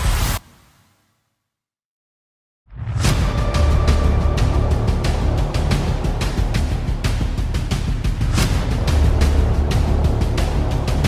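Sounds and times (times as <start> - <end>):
dramatic music with deep bass: 2.8 - 11.0.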